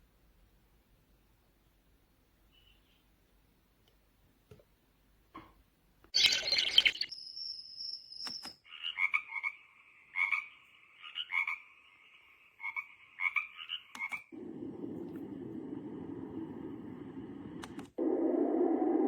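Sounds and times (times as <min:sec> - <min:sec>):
recorded frog croaking: 0:08.7 - 0:14.3.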